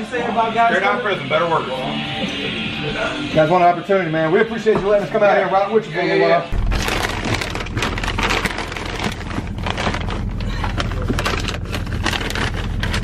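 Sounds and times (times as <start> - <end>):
vehicle engine humming: 6.5 - 13.0
crackling and rustling: 6.6 - 13.0.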